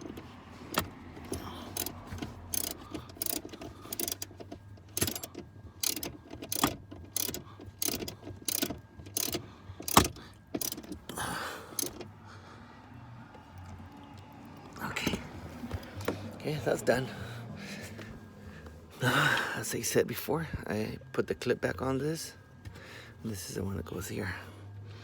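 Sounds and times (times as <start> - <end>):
ratchet wrench clicking: 0.0 - 11.0, 11.8 - 12.0.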